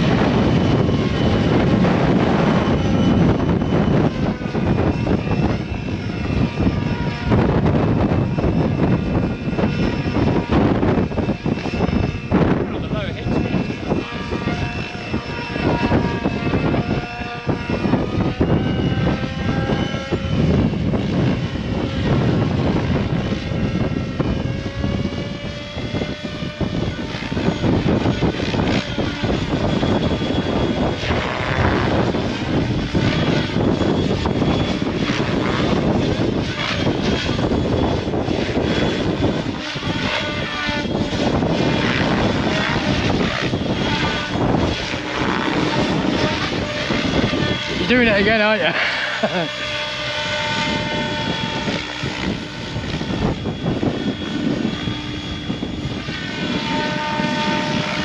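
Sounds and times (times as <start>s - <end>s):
rc helicopter motor whine: 0.0s - 58.0s
wind buffeting microphone: 0.0s - 58.0s.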